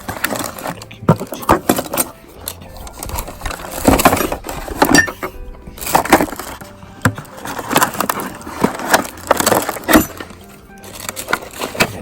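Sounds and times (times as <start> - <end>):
music: 0.0 - 12.0
wooden knocks and clatter: 2.9 - 10.4.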